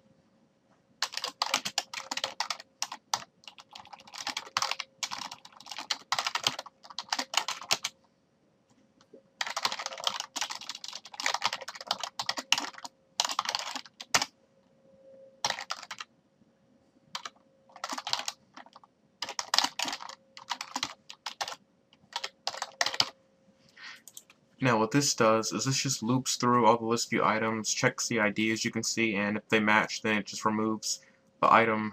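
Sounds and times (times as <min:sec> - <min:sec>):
faint steady hum: 0:00.0 - 0:31.9
typing on computer keyboard: 0:01.0 - 0:07.9, 0:09.4 - 0:14.3, 0:15.4 - 0:16.0, 0:17.2 - 0:23.1.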